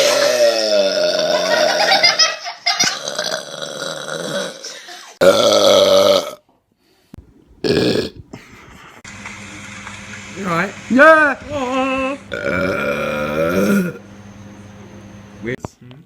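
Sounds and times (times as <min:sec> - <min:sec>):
person burping: 0:00.0 - 0:02.0, 0:02.8 - 0:06.5, 0:07.6 - 0:08.3, 0:12.3 - 0:14.0.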